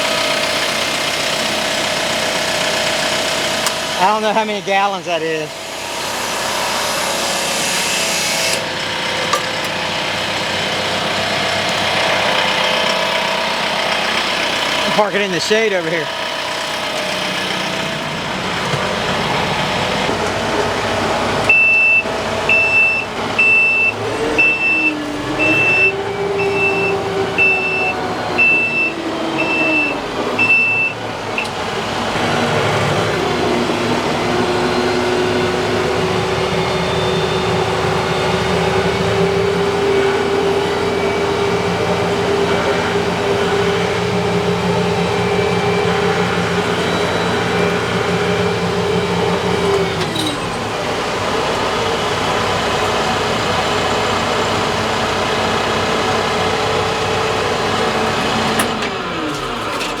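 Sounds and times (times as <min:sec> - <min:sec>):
tractor diesel engine running: 0:00.0 - 1:00.0
reverse alarm beeping: 0:21.5 - 0:31.6.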